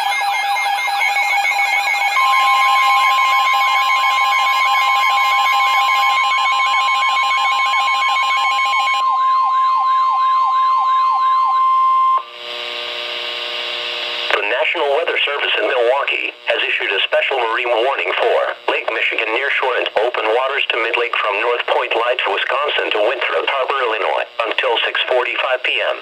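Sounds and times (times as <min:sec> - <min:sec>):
electronic sirens sweeping: 0:00.0 - 0:13.5
steady radio alert tone: 0:00.9 - 0:12.3, 0:14.3 - 0:26.0.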